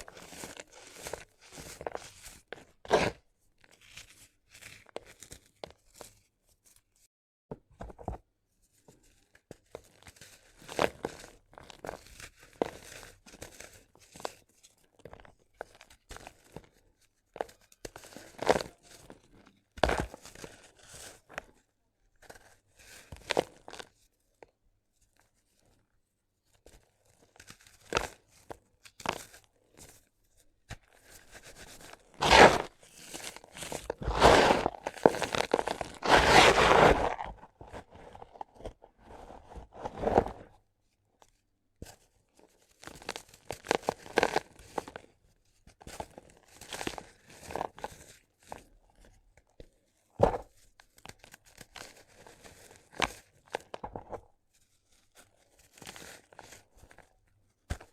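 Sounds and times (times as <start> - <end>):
sand cement chunks crunching: 32.2 - 32.7, 34.0 - 37.8.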